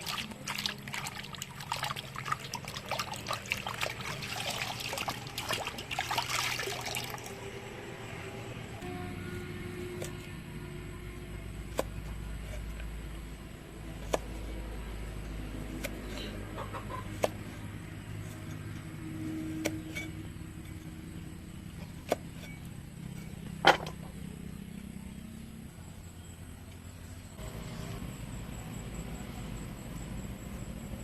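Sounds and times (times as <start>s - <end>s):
chickens clucking: 16.1s - 17.8s.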